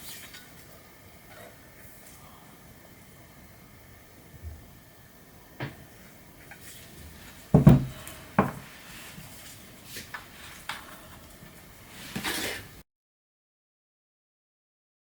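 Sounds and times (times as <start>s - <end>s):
objects knocking on hard surface: 7.6s - 8.7s.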